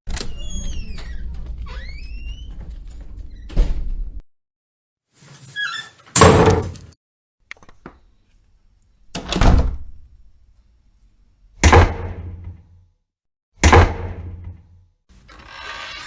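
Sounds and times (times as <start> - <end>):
door squeaking open: 0.1 - 4.0, 5.3 - 6.8
door slamming shut: 6.2 - 6.9, 11.6 - 12.6, 13.6 - 14.7.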